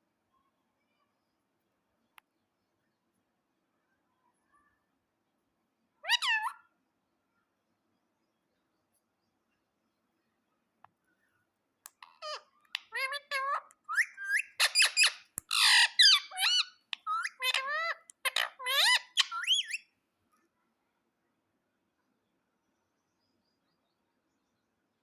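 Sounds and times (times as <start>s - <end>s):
parrot squawking and chattering: 6.0s - 6.7s, 11.9s - 19.8s.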